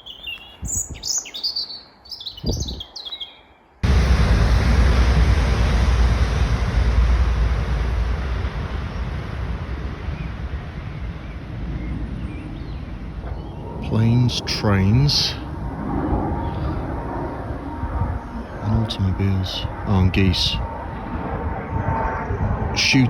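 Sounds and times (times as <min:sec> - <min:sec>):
small birds chirping: 0:00.0 - 0:03.8
loud steady rumble: 0:03.8 - 0:23.0.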